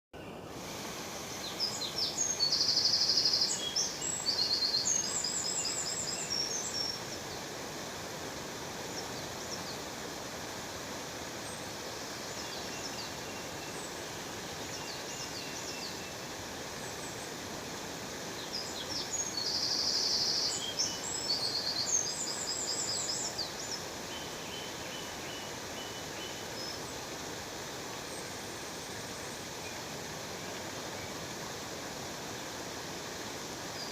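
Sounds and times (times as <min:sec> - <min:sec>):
waterfall rushing: 0:00.4 - 0:33.9
songbird trilling song: 0:01.4 - 0:07.0, 0:18.4 - 0:26.8.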